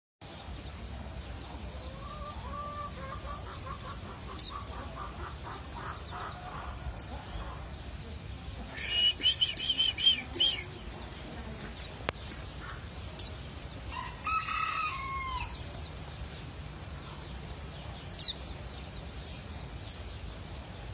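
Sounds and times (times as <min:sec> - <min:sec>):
bird chirping and twittering: 0:00.2 - 0:20.9
chickens clucking: 0:01.6 - 0:07.8
rooster crowing: 0:13.9 - 0:15.6.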